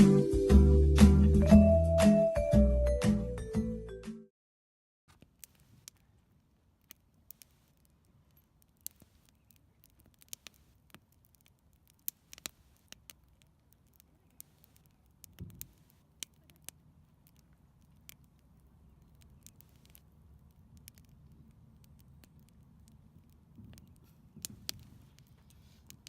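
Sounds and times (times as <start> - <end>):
campfire crackling: 5.2 - 26.0.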